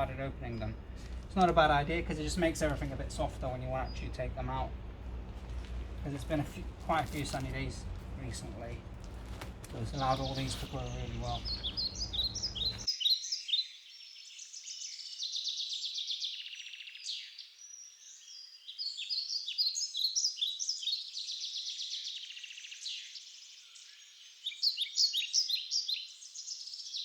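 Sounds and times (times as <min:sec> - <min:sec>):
songbirds chirping and trilling: 0:00.0 - 0:27.0.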